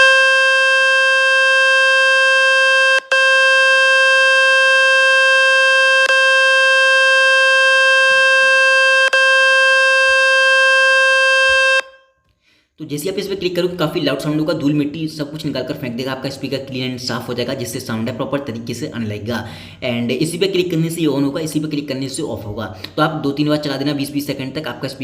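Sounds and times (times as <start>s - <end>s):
buzzy speaker cleaning tone: 0.0s - 11.9s.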